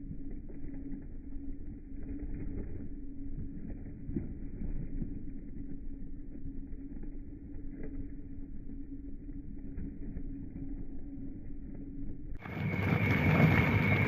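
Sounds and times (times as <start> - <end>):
washing machine motor hum: 9.6 - 14.0.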